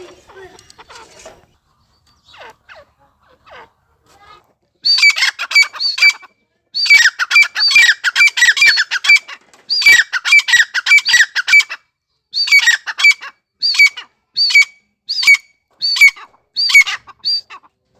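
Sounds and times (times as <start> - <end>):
bird calling sharp repeated notes: 4.8 - 11.8, 12.4 - 17.6.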